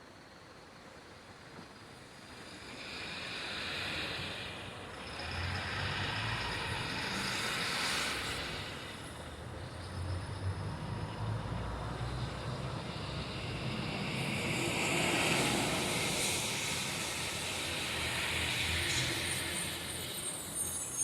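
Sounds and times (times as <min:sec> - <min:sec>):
tyres hissing on wet asphalt: 0:02.1 - 0:21.0.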